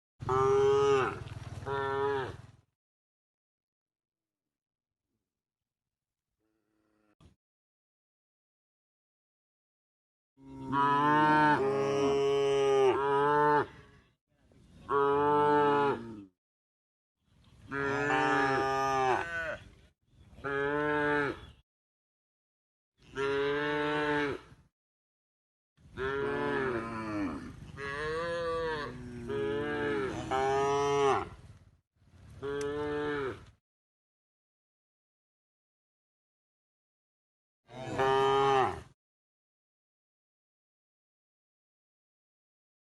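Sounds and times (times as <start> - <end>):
cow mooing: 0.2 - 2.4, 6.4 - 7.2, 10.4 - 13.8, 14.9 - 16.3, 17.7 - 19.6, 20.4 - 21.5, 23.0 - 24.6, 26.0 - 31.4, 32.4 - 33.5, 37.7 - 38.9.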